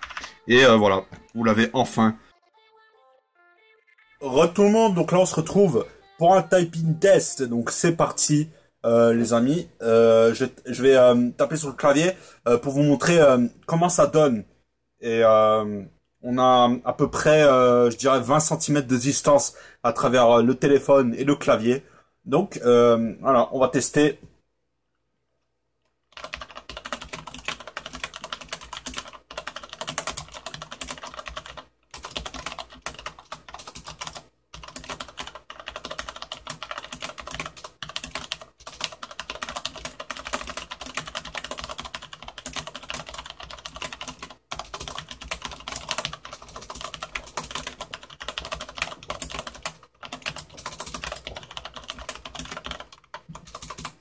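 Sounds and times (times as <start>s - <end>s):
typing on mechanical keyboard: 0.0s - 0.4s, 26.1s - 54.0s.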